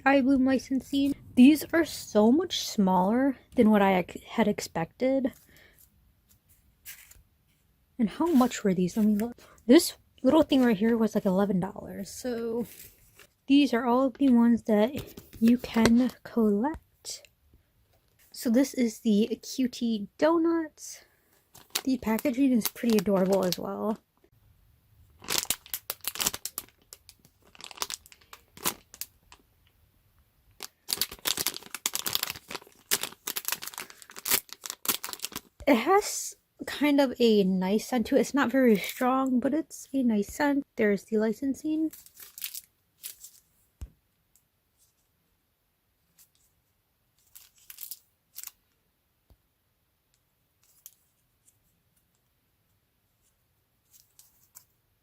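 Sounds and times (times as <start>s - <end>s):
plastic packaging crinkling and tearing: 21.5s - 24.0s, 25.2s - 29.4s, 30.6s - 35.6s, 41.9s - 43.4s, 47.2s - 48.6s.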